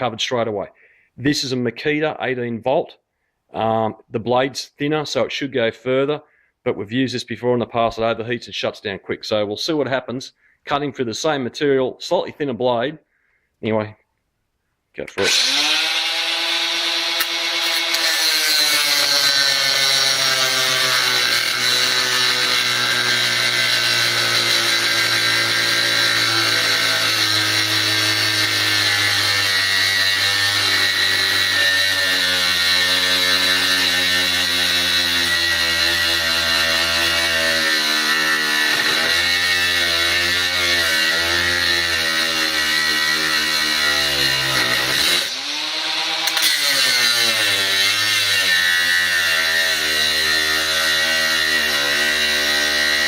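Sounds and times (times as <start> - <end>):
angle grinder cutting: 15.2 - 53.0.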